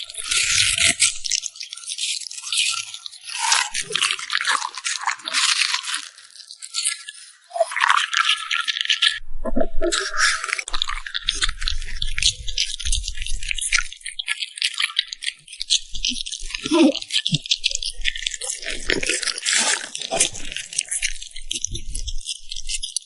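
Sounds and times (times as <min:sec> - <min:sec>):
dog chewing crunchy food: 0:10.6 - 0:23.0.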